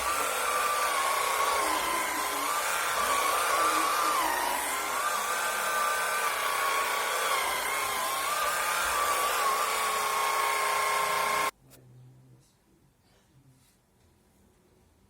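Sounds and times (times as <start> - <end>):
electric broom motor whining: 0.0 - 11.5.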